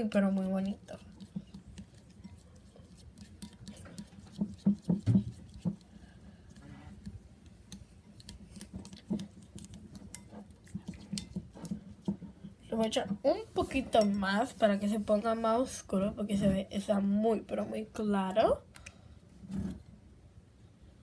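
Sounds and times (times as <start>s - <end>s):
utensil tapping bowl: 0.0s - 6.0s, 7.0s - 12.3s, 13.7s - 14.3s.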